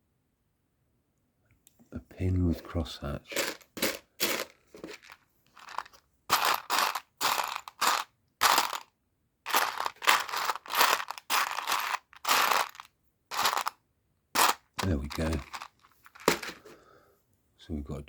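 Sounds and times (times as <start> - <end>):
hands rummaging plastic pieces: 3.3 - 8.8, 9.5 - 13.8, 14.4 - 16.8.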